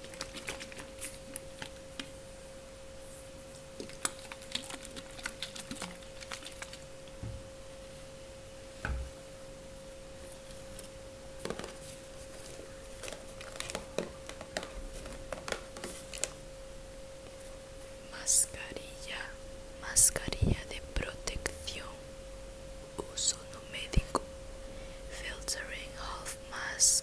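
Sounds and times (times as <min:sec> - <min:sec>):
fingers crinkling packaging: 0:00.0 - 0:02.1, 0:03.8 - 0:06.9, 0:11.4 - 0:16.4
faint hum: 0:00.0 - 0:27.0
soft low thumps: 0:07.2 - 0:07.7.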